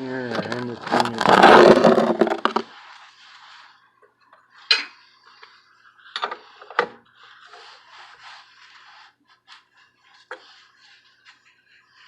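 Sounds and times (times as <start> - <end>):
faint scraping: 0.0 - 3.8.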